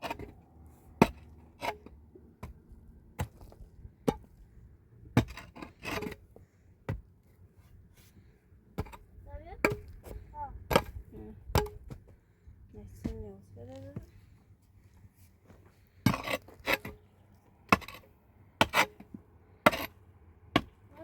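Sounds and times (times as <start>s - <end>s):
faint rubbing and scraping: 9.8s - 20.0s.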